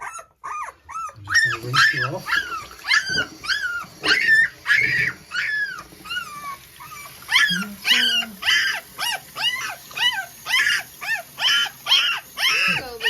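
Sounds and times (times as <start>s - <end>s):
puppy whining: 0.0s - 13.0s
puppy yelping: 0.0s - 13.0s.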